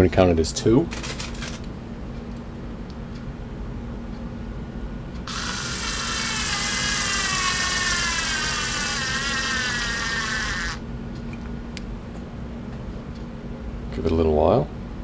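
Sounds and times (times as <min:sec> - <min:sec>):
cordless screwdriver whining: 0:05.3 - 0:10.8.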